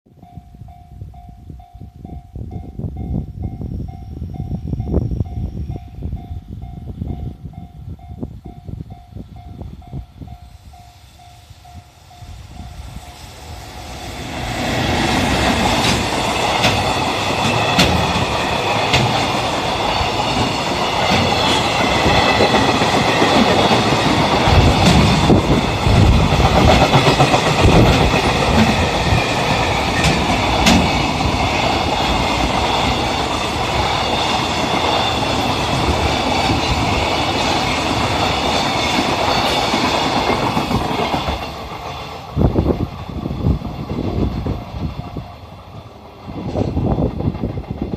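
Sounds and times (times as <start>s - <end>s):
train wheels clattering over rails: 14.2s - 47.9s.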